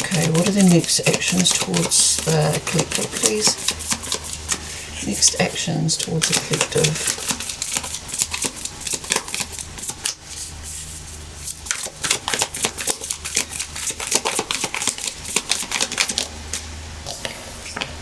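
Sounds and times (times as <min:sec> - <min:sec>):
cards being shuffled: 0:00.0 - 0:16.3.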